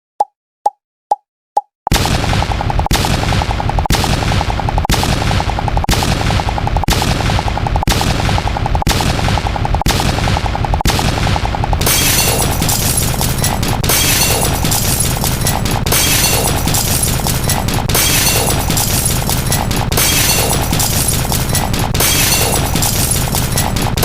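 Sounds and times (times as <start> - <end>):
heavier hits: 1.9 - 24.0
rapid overlapping sharp pops: 1.9 - 24.0.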